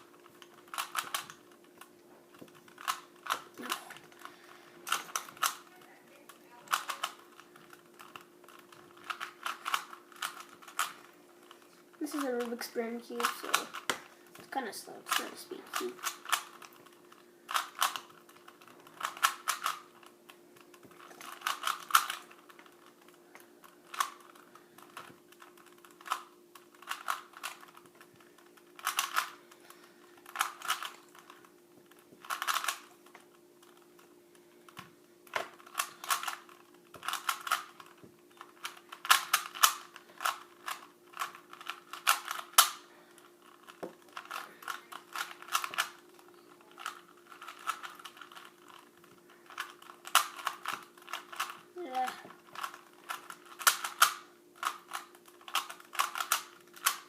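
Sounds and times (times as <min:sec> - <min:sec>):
faint steady hum: 0:00.0 - 0:57.0
plastic cube clicking as twisted: 0:00.1 - 0:04.3, 0:04.9 - 0:05.7, 0:06.7 - 0:11.6, 0:13.2 - 0:14.0, 0:15.1 - 0:29.6, 0:30.2 - 0:31.5, 0:32.2 - 0:33.8, 0:34.7 - 0:46.0, 0:46.7 - 0:57.0.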